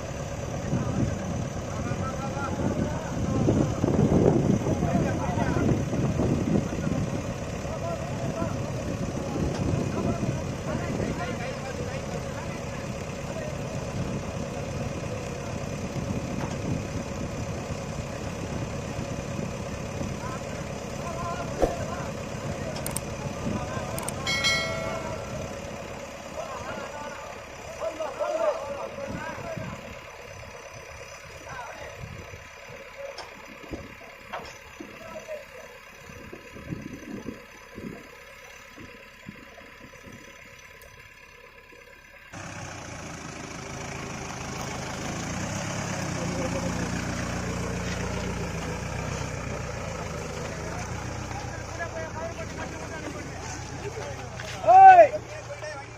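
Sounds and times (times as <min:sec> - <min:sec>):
diesel engine running: 0:00.0 - 0:55.9
machine thuds and clunks: 0:21.6 - 0:21.9.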